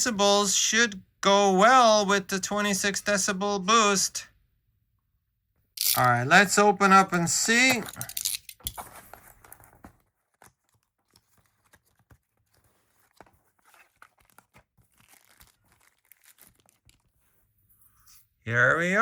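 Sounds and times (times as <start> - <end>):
packaging crinkling and tearing: 7.8 - 17.2.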